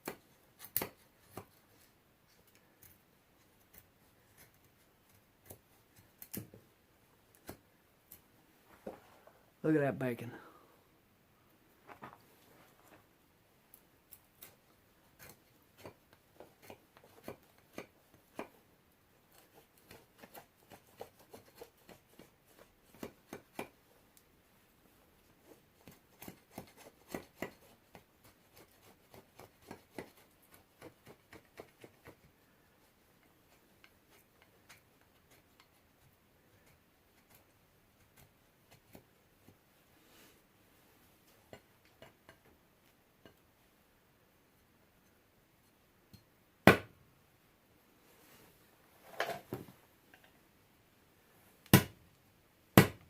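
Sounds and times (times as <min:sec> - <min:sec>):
knife scraping wood: 0:00.0 - 0:06.5, 0:14.4 - 0:18.6, 0:19.3 - 0:23.7, 0:25.4 - 0:36.0.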